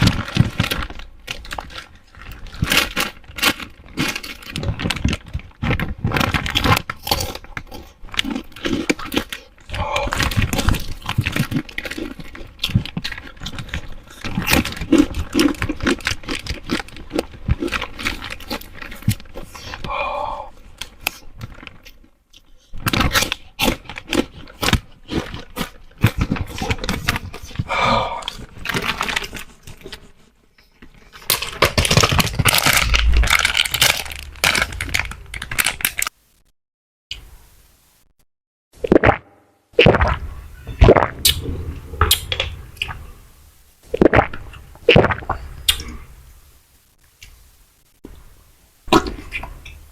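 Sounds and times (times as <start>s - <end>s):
plastic wrappers crinkling: 0.0s - 19.9s, 20.6s - 36.2s.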